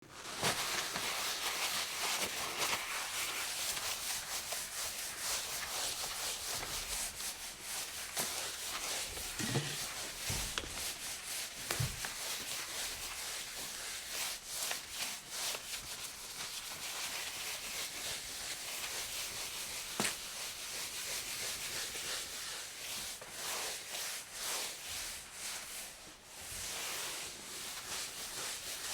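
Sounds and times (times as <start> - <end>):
cloth wiping a counter: 0.2 - 28.9.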